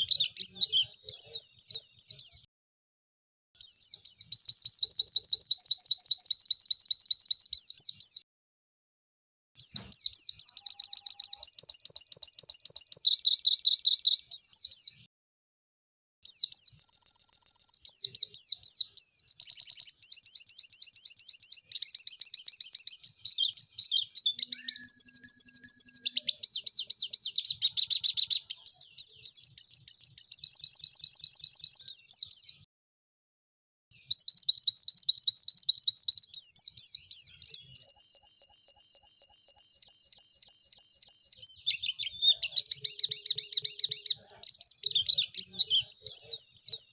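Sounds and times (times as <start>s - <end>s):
bird chattering trills: 9.6s - 13.4s, 18.0s - 30.4s.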